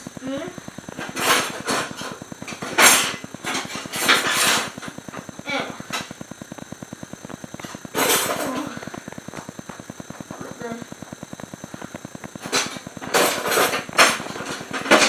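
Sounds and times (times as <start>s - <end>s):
fast pulsing hum: 0.0s - 15.0s
utensils clattering and scraping: 0.9s - 4.9s, 12.4s - 15.0s.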